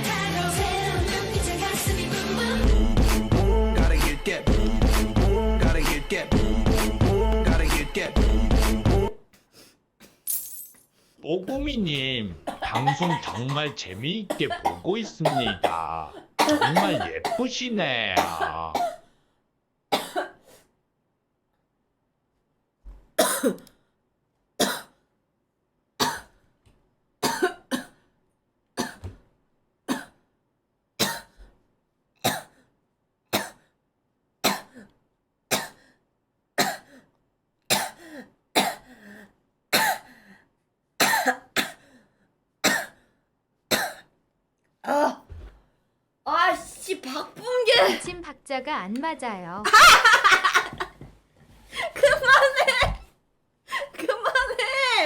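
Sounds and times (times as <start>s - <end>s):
person coughing: 12.4s - 19.0s, 19.9s - 20.4s, 23.2s - 23.7s, 27.2s - 28.0s, 39.8s - 40.1s, 41.0s - 41.8s.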